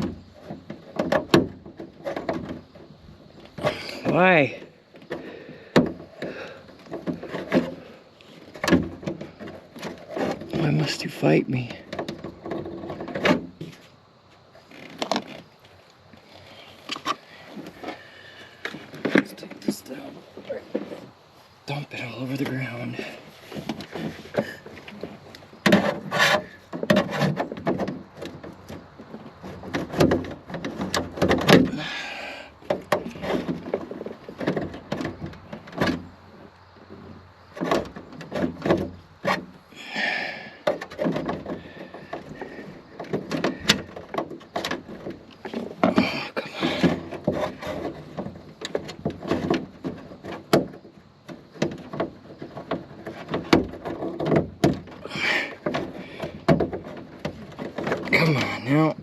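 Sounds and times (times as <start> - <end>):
plastic car parts handled: 14.6 - 15.8, 23.2 - 31.9, 40.6 - 59.0
hissy scrapes: 25.7 - 27.4.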